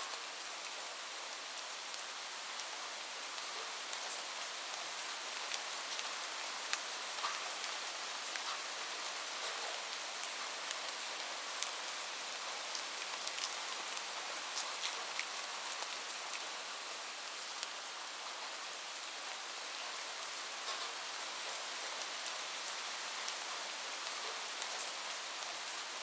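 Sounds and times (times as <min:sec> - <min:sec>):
rain falling on a roof: 0:00.0 - 0:26.0.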